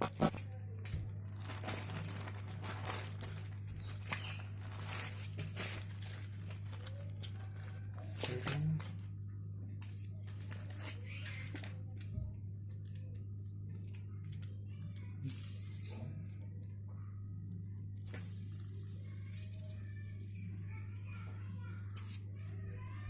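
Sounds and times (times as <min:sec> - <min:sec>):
low electrical hum: 0:00.0 - 0:23.0
packaging crinkling and tearing: 0:00.1 - 0:09.2, 0:09.8 - 0:12.2.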